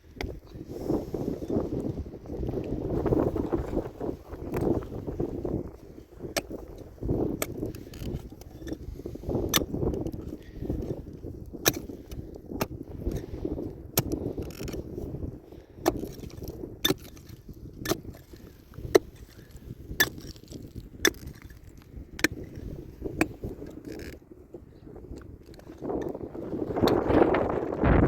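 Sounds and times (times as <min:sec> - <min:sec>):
low scraping and rumbling: 0:00.0 - 0:11.0, 0:18.1 - 0:28.0.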